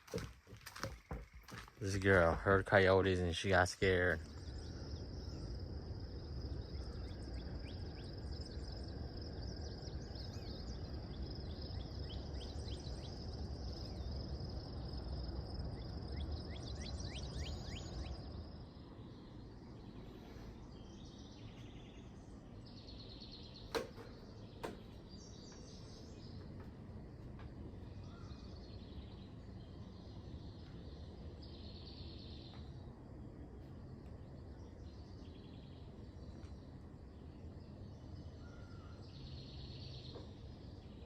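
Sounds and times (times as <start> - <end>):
high insect trill: 0.0 - 20.0
bird calls: 0.0 - 32.9, 33.6 - 41.0
low rumbling noise: 1.7 - 41.0.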